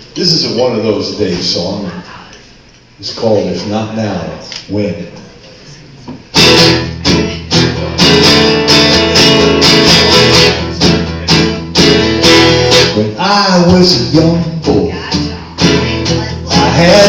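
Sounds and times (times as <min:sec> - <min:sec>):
acoustic guitar strumming: 0:06.3 - 0:17.0.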